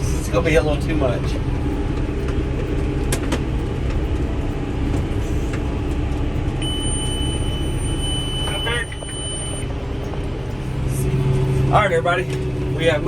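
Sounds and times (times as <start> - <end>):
tractor engine running: 0.0 - 13.0
high-pitched tone: 6.6 - 11.4.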